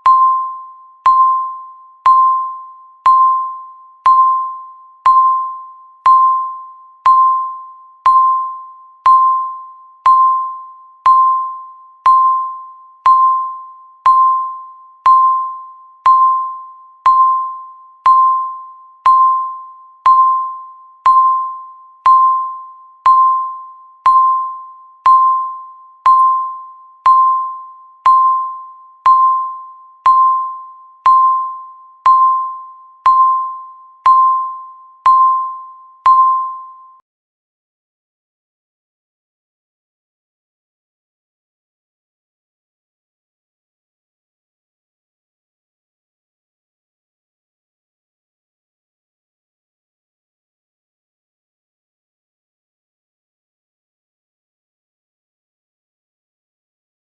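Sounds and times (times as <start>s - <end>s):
electronic timer beeps: 0.0s - 37.0s.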